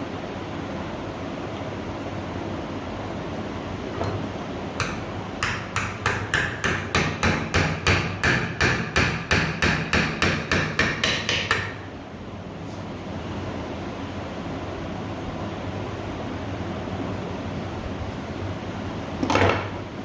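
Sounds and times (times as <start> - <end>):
hammer striking metal: 4.8 - 11.8.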